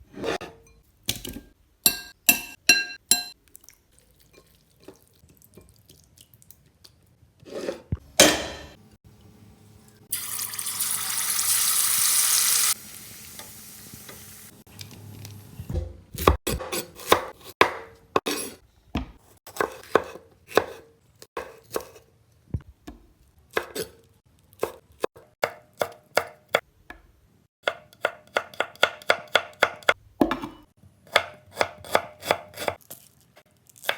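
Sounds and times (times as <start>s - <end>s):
knife chopping on cutting board: 15.7s - 20.8s, 27.7s - 32.8s.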